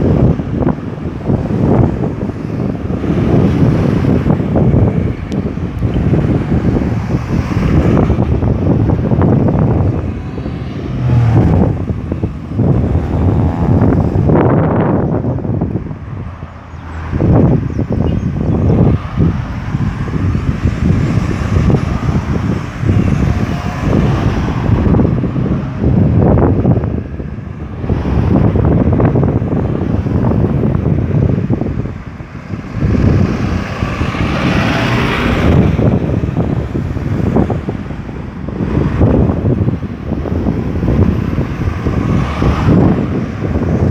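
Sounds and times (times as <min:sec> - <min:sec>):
road traffic rumble: 0:00.0 - 0:43.9
wind buffeting microphone: 0:00.0 - 0:43.9
engine accelerating past: 0:09.5 - 0:14.5.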